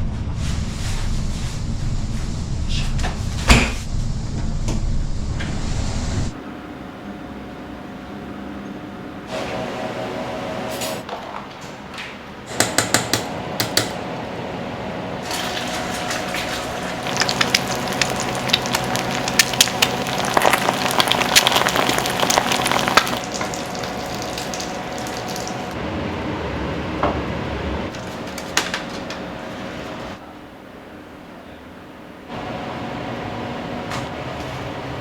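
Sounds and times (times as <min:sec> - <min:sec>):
kitchen equipment humming: 0:04.3 - 0:30.3, 0:32.3 - 0:35.0
food sizzling in hot oil: 0:15.2 - 0:25.8.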